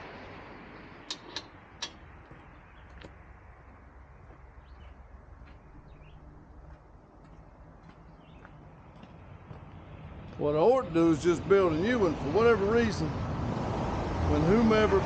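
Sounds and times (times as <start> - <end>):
faint birds chirping: 0.2 - 10.8
sharp metal clank: 1.0 - 2.0.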